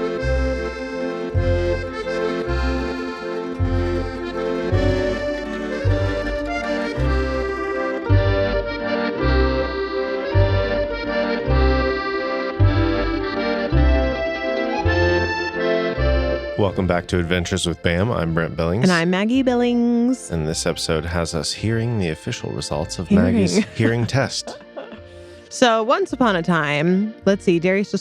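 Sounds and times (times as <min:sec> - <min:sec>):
steady bass pulse: 0:00.0 - 0:08.8
reedy held chords: 0:00.0 - 0:19.2, 0:21.6 - 0:25.6.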